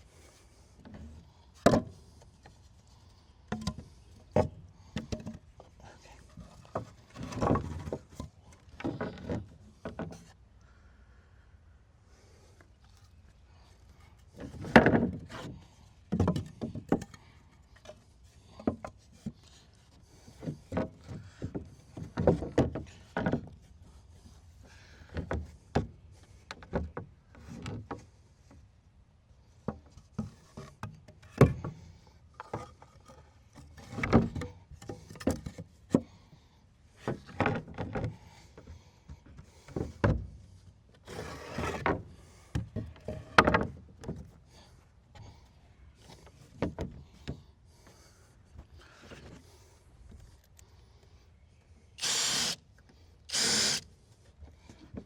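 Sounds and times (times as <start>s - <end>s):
wood knocking and scraping: 3.5s - 10.3s.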